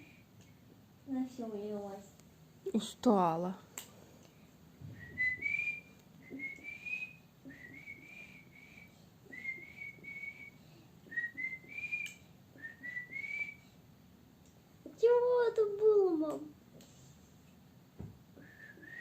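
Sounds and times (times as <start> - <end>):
person whistling short phrases: 5.0 - 10.6.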